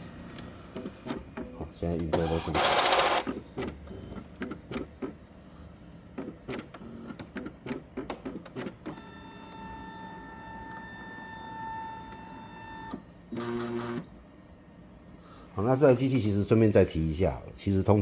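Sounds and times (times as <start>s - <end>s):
printer motor whine: 0.0s - 5.1s, 6.2s - 14.2s
printer mechanical clicks: 0.4s - 4.9s.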